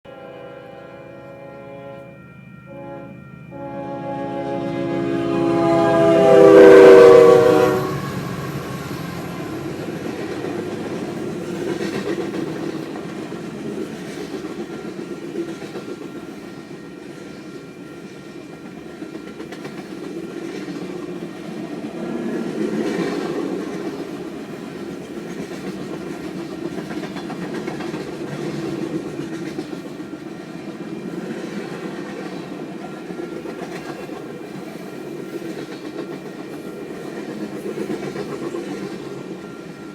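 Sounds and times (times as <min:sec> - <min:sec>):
train whistle chord: 0:00.1 - 0:10.8
train rumble and wheel clatter: 0:00.1 - 0:39.9.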